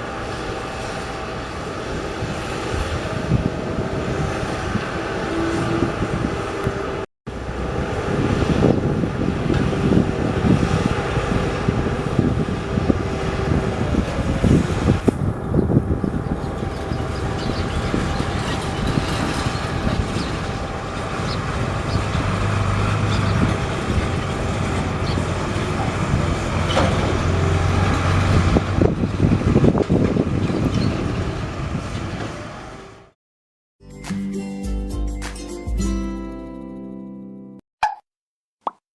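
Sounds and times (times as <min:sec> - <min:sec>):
heavy vehicle engine running: 0:00.0 - 0:33.2.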